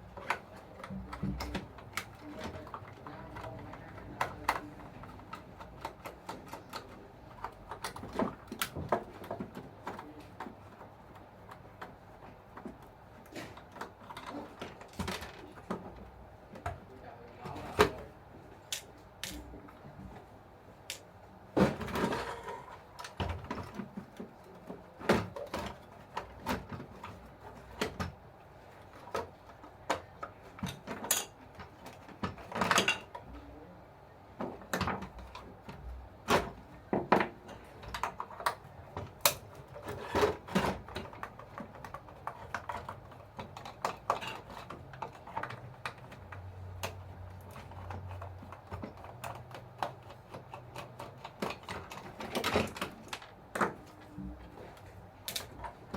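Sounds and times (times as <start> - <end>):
plastic and metal parts clicking: 0.0 - 16.8, 34.4 - 55.9.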